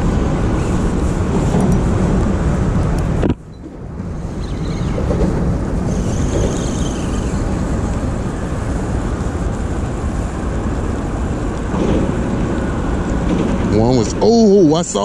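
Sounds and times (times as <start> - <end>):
rain: 5.8 - 15.0.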